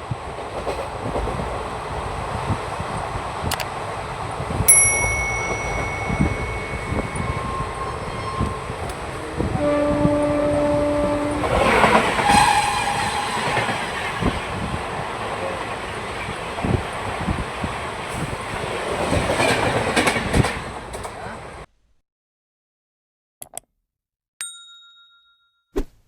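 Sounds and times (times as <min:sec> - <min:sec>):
train wheels clickety-clack: 0:00.0 - 0:03.8, 0:05.4 - 0:21.3
low train horn blast: 0:06.2 - 0:13.9
high train horn: 0:06.2 - 0:14.0.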